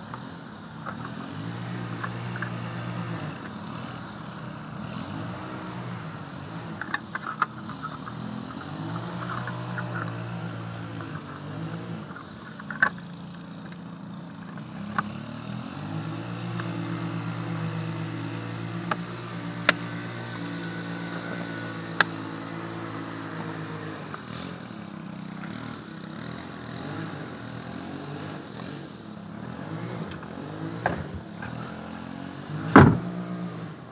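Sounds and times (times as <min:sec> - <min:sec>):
vehicle engine running: 0:00.0 - 0:33.9
sharp clicks and knocks: 0:30.8 - 0:31.6, 0:32.6 - 0:33.1.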